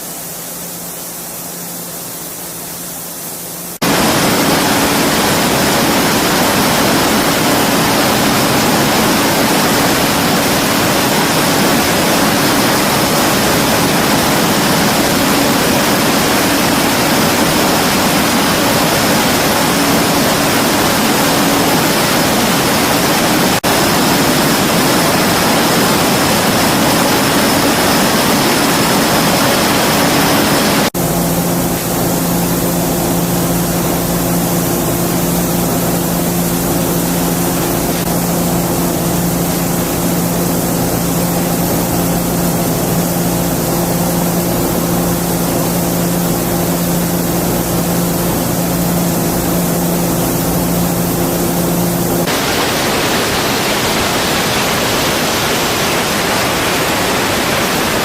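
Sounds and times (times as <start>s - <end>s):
loud rushing noise: 3.7s - 58.0s.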